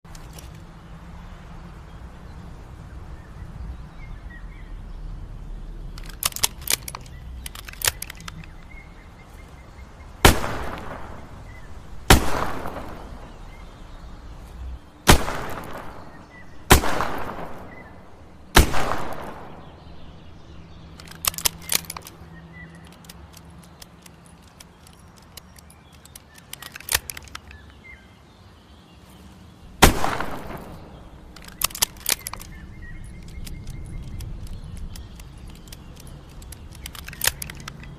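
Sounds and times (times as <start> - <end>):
light clicks: 0.1 - 0.7, 5.9 - 9.6, 10.3 - 27.9, 30.1 - 37.9.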